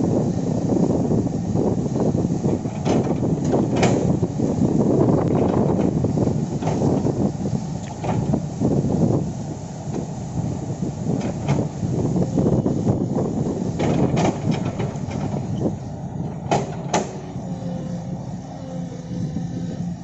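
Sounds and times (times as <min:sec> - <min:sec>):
excavator engine under load: 0:00.0 - 0:20.0
sharp knocks and clanks: 0:02.7 - 0:04.1, 0:13.8 - 0:15.6, 0:16.3 - 0:17.3.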